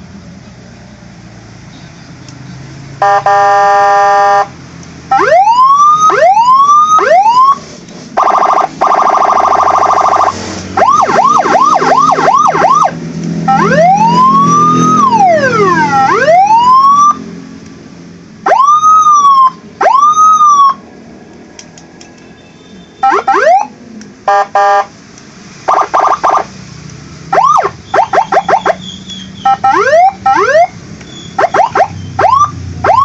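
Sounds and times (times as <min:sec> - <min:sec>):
electronic motorcycle siren: 0:03.0 - 0:04.5, 0:05.1 - 0:07.6, 0:08.2 - 0:17.3, 0:18.4 - 0:20.8, 0:23.0 - 0:23.7, 0:25.7 - 0:26.5, 0:27.3 - 0:33.0.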